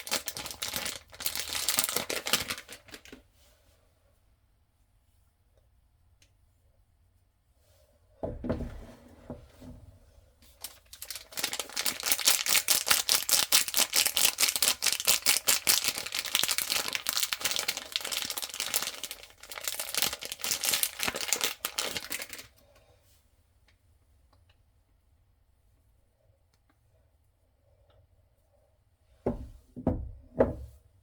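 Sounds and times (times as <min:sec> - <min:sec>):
packaging tearing and crinkling: 0:00.0 - 0:03.2, 0:10.6 - 0:22.5
dull thump: 0:08.2 - 0:10.0, 0:29.2 - 0:30.8.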